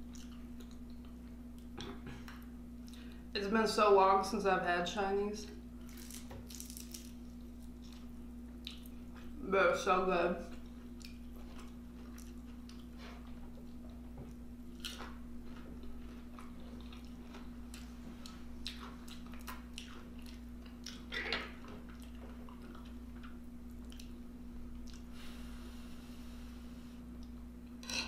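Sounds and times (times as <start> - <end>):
person chewing: 0.0 - 3.2, 5.8 - 9.3, 10.6 - 24.2, 24.8 - 25.1.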